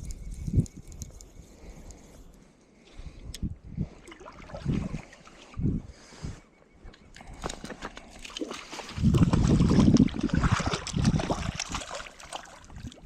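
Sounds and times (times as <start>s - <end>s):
stream water splashing: 8.2s - 13.0s.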